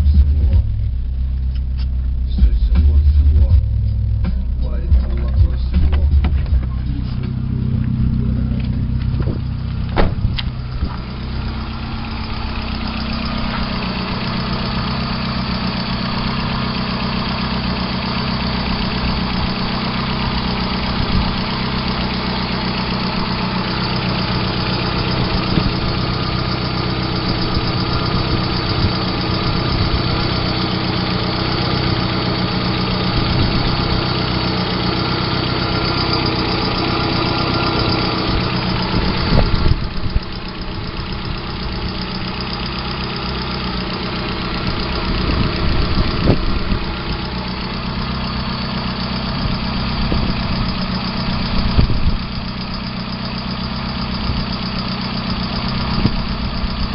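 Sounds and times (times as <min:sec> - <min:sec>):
car engine idling with tapping knock: 0:00.0 - 0:56.9.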